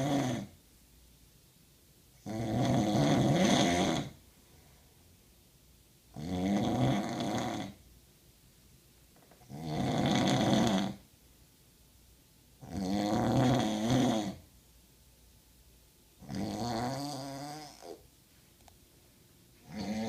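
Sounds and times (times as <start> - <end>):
person snoring loudly: 0.0 - 0.5, 2.2 - 4.2, 6.2 - 7.8, 9.5 - 11.0, 12.6 - 14.4, 16.2 - 18.0, 19.6 - 20.0.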